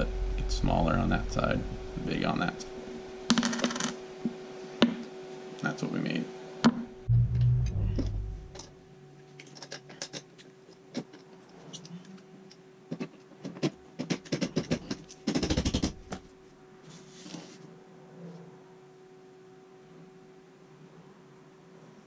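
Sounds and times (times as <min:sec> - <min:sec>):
faint steady hum: 0:00.0 - 0:22.0
clicks of small parts and tools: 0:09.4 - 0:15.7.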